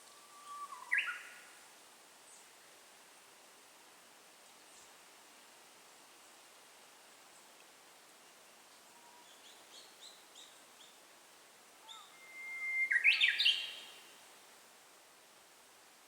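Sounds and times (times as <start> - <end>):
bird whistling song: 0.1 - 1.3, 11.8 - 14.0
faint short bird chirps: 0.1 - 1.4, 11.8 - 14.0.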